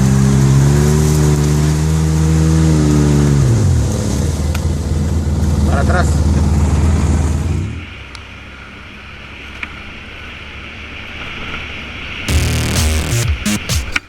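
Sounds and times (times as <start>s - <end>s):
vehicle engine running loudly: 0.0s - 7.8s
music: 12.3s - 14.0s.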